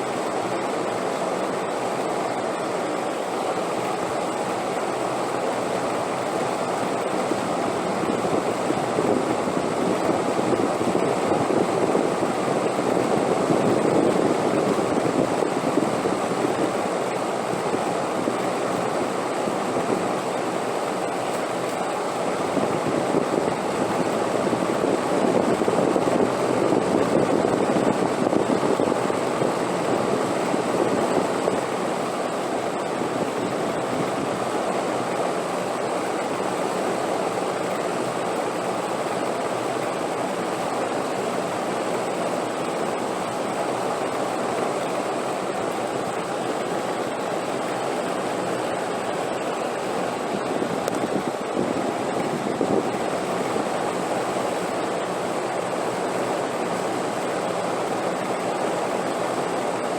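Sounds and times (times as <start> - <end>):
wind blowing: 46.5 - 55.0.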